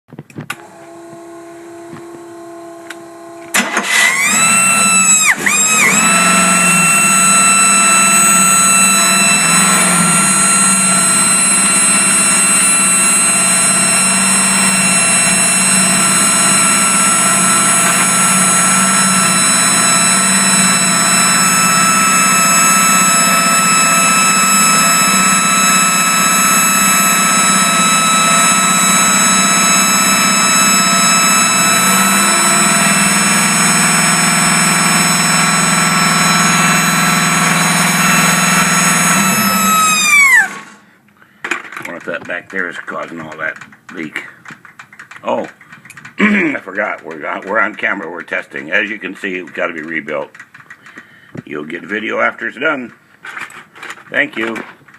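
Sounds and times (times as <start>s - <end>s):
high whine: 0.4s - 41.1s
small engine running: 0.6s - 40.9s, 41.8s - 52.1s.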